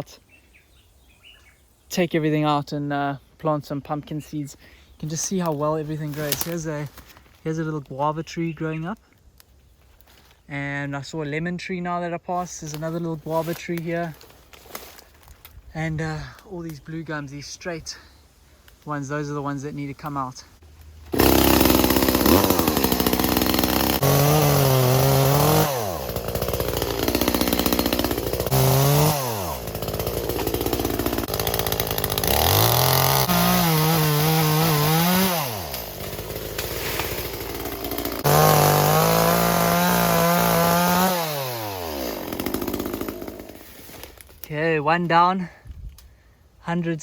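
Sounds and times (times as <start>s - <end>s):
chainsaw cutting a tree: 21.1s - 44.3s.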